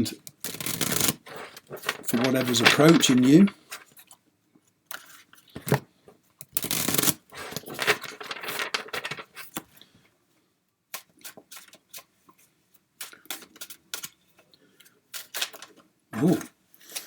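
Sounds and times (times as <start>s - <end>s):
cards being shuffled: 0.4s - 3.9s, 6.6s - 9.6s, 15.2s - 15.7s.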